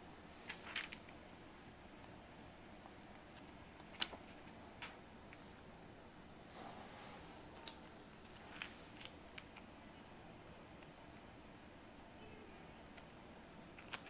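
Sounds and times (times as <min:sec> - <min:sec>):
soft rustle: 0:00.2 - 0:01.1, 0:03.4 - 0:09.2.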